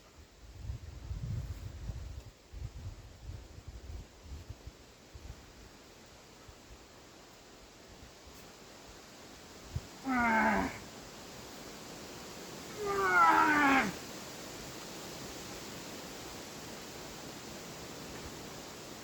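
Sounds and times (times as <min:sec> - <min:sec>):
climber yelling with effort: 0:10.0 - 0:10.8, 0:12.7 - 0:14.0.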